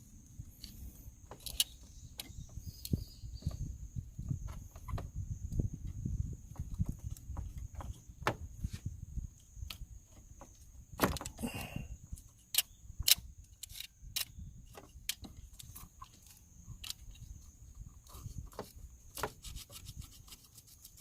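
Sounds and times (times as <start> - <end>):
hand tools and metal parts clicking: 0.5 - 3.0, 10.5 - 21.0
scraping rustle: 14.6 - 21.0.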